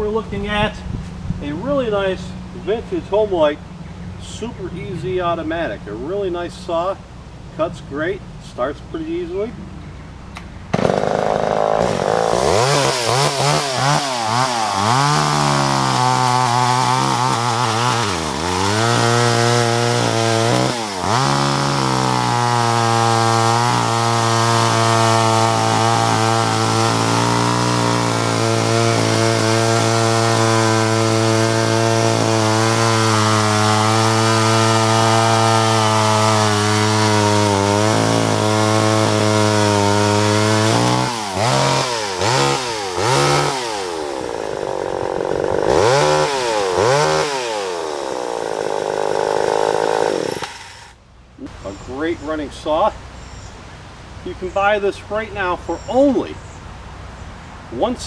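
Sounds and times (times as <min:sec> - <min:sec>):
chainsaw revving: 0:10.7 - 0:51.6.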